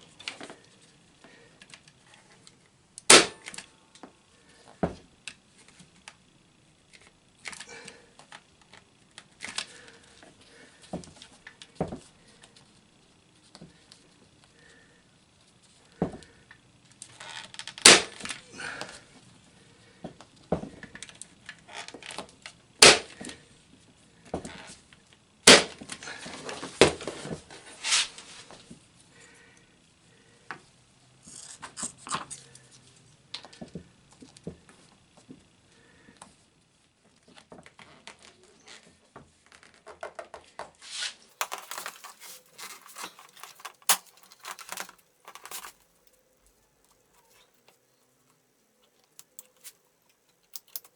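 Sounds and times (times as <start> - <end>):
material rustling and tearing: 41.4 - 46.1.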